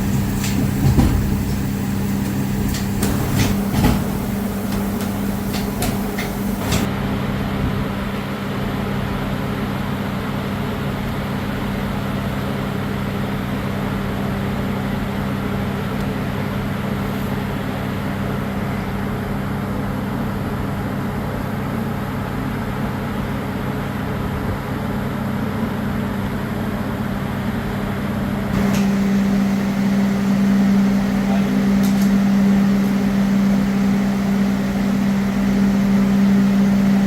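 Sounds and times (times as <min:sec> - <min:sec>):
factory machinery humming: 0:00.0 - 0:06.9, 0:28.6 - 0:37.0.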